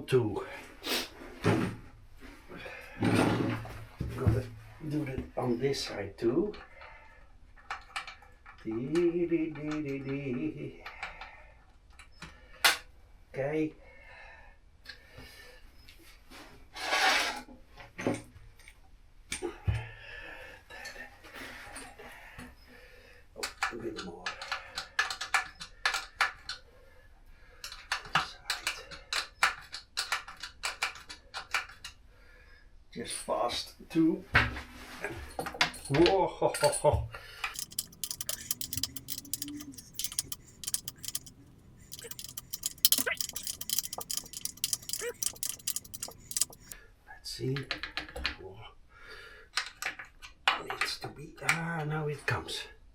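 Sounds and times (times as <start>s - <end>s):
metallic clicking on chain: 37.6s - 46.8s.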